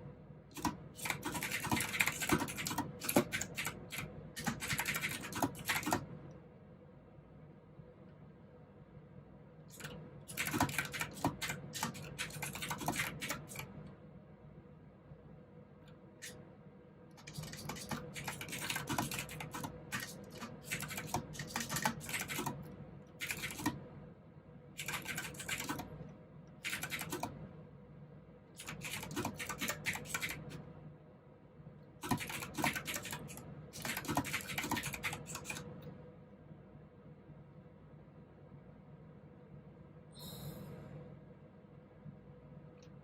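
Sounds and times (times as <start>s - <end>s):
mechanical keyboard typing: 0.5s - 6.1s, 9.7s - 13.7s, 17.2s - 23.8s, 24.8s - 25.9s, 26.6s - 27.4s, 28.6s - 30.6s, 32.0s - 35.8s.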